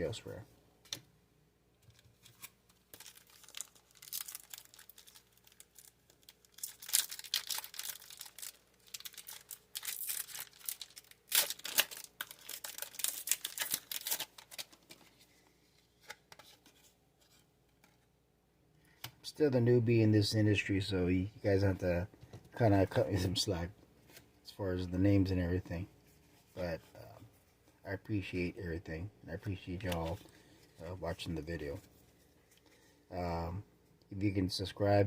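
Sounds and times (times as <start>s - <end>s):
foil wrapper crinkling: 1.8s - 15.2s.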